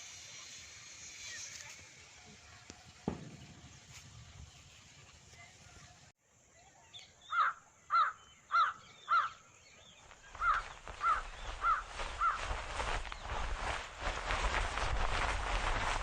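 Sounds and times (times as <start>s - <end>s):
bird calling quickly: 7.2s - 13.3s.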